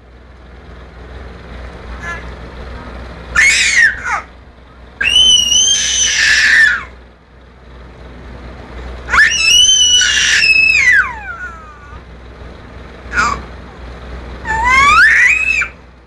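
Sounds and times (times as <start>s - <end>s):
baby squealing: 3.3s - 4.3s, 5.0s - 6.9s, 9.1s - 12.0s, 13.1s - 13.4s, 14.4s - 15.8s.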